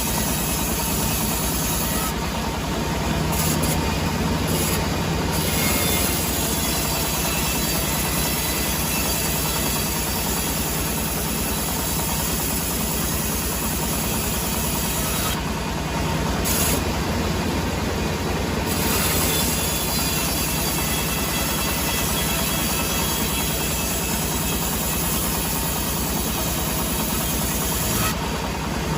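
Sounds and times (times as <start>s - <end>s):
engine hum: 0.0s - 28.9s
sawmill machinery running: 0.0s - 28.9s.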